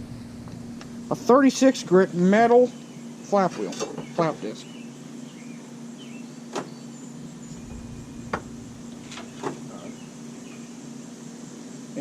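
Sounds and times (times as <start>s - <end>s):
steady low hum: 4.5s - 12.0s.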